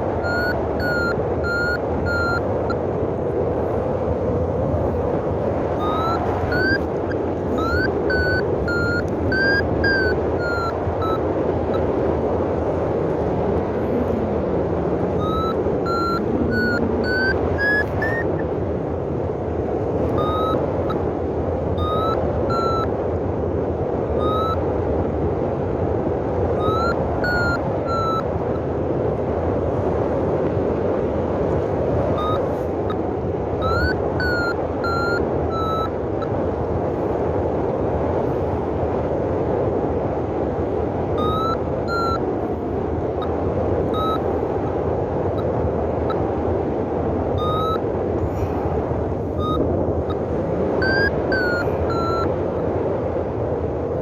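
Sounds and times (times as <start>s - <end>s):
variometer beeping: 0.0s - 2.9s, 5.6s - 12.0s, 14.8s - 18.6s, 19.9s - 21.1s, 21.7s - 22.9s, 24.1s - 24.7s, 26.5s - 28.6s, 32.0s - 36.5s, 41.1s - 42.3s, 43.2s - 44.7s, 47.3s - 47.9s, 49.2s - 52.7s.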